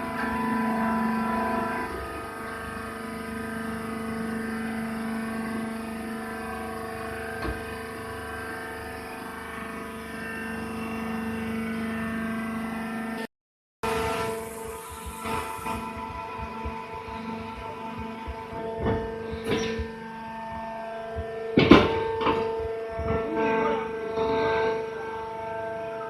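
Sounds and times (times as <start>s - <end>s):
baler machine hum: 0.0s - 13.2s, 13.8s - 26.0s
machine knock: 14.6s - 23.3s.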